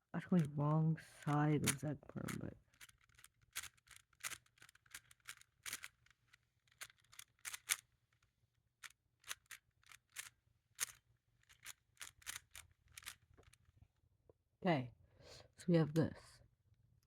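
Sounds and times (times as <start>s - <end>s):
puzzle cube plastic clicks: 1.2s - 13.7s.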